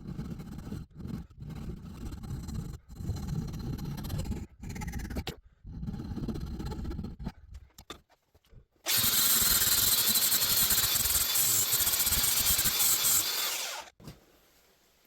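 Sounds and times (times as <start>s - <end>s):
electric power tool running: 8.9s - 13.9s.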